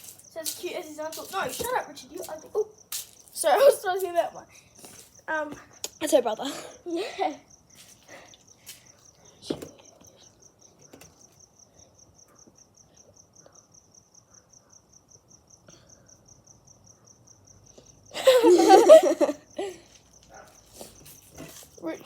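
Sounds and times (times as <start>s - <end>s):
cricket chirping: 0.0s - 22.0s
burst of laughter: 18.1s - 19.8s.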